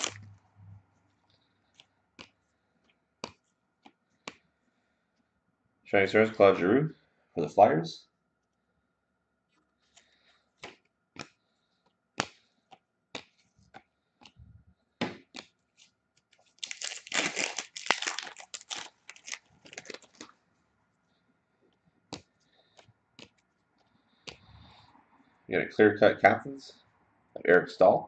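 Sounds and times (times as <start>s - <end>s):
wrapper crinkling and tearing: 0.0s - 0.3s, 16.3s - 20.3s.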